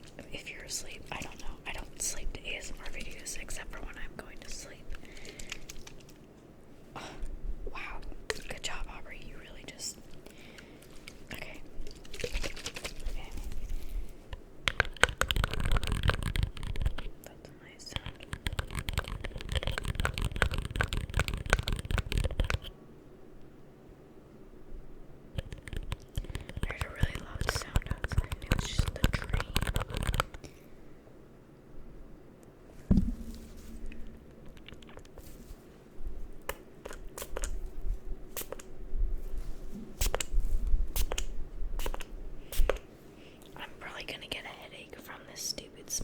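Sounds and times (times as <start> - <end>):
faint low hum: 0.0 - 46.0
scratching and clicking on microphone: 14.7 - 17.1, 17.8 - 22.7, 25.4 - 30.4, 33.0 - 35.2
low rumble: 32.9 - 35.2.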